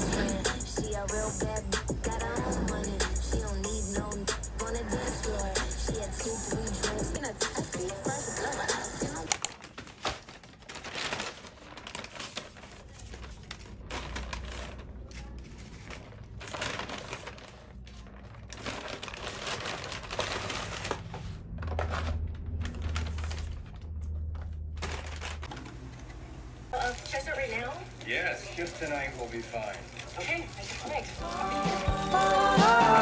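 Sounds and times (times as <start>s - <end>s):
clicks and taps: 9.3s - 9.6s
rustling and crinkling: 9.3s - 33.0s.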